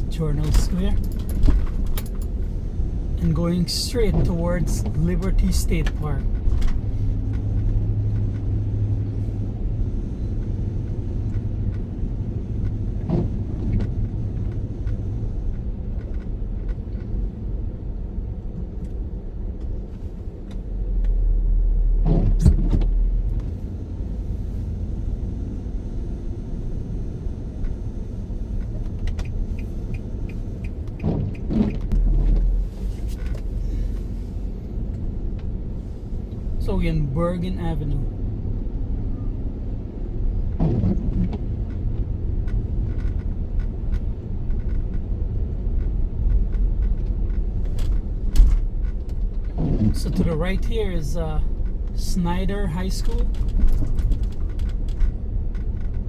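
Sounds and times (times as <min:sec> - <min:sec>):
car cabin rumble: 0:00.0 - 0:08.4, 0:27.5 - 0:56.0.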